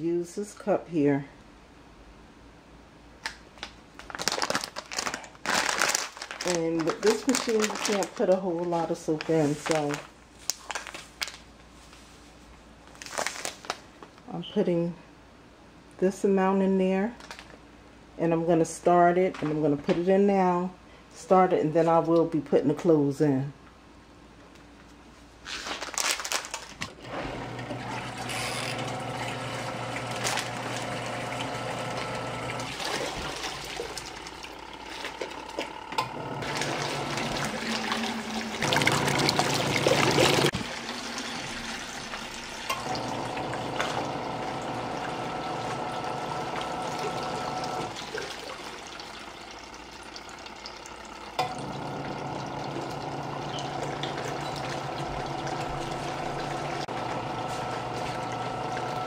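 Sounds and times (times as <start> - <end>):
washing machine motor humming: 27.0 - 59.0
water churning: 27.1 - 59.0
water splashing: 32.5 - 35.7, 36.4 - 51.0, 52.1 - 59.0.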